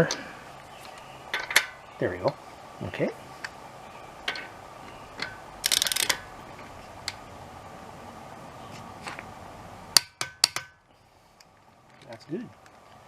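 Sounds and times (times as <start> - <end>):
ratchet wrench rattling: 5.2 - 6.3.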